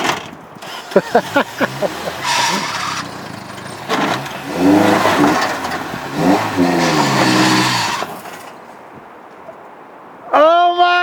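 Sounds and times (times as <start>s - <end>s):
engine revving hard: 0.0s - 8.6s.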